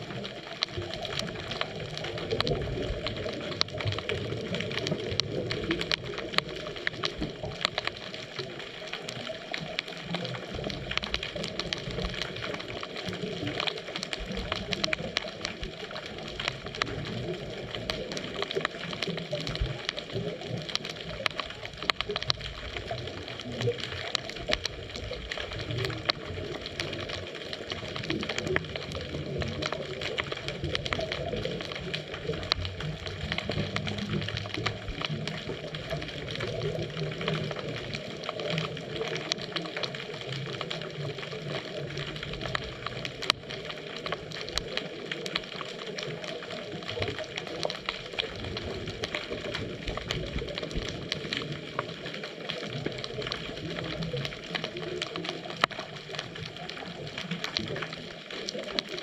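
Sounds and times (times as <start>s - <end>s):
fine crackling clicks: 0.0s - 59.0s
muffled underwater water wash: 0.0s - 59.0s.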